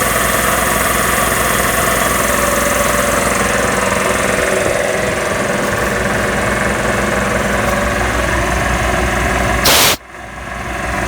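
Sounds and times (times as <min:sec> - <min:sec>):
air compressor running: 0:00.0 - 0:10.0
loud burst of hiss: 0:09.6 - 0:10.0.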